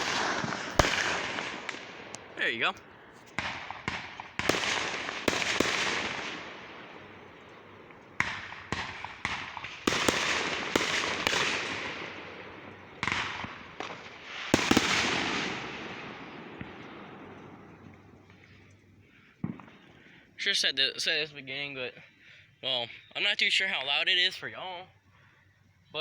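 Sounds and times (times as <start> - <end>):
fireworks bangs: 0.0 - 18.4, 19.4 - 20.0
fireworks crackling hiss: 0.0 - 18.4.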